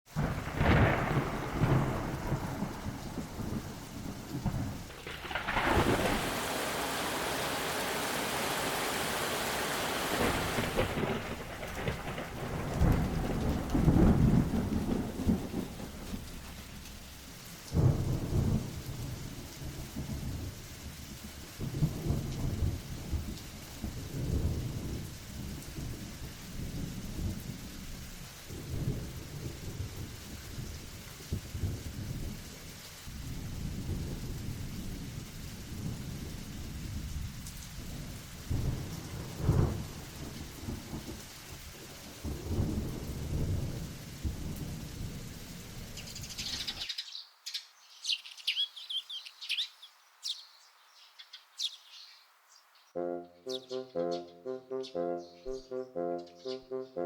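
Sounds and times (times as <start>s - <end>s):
thunder rumbling: 0.1s - 20.6s, 21.6s - 32.5s, 33.1s - 46.8s
rain hissing: 0.1s - 52.6s
sharp thunder crack: 0.2s - 7.3s, 10.1s - 16.7s.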